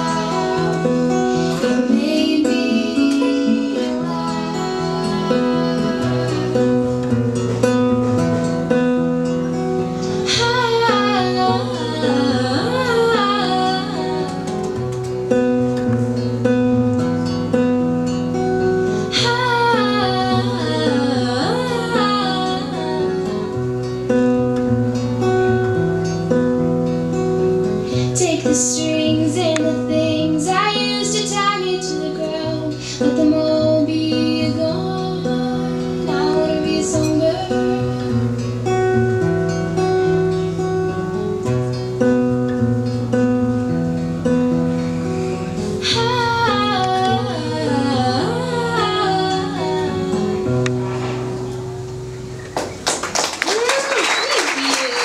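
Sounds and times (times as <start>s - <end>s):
woman singing wordless melody: 0.0s - 7.2s, 9.9s - 15.2s, 19.0s - 23.9s, 27.9s - 38.4s, 45.8s - 50.7s
acoustic guitar strumming: 0.0s - 53.1s.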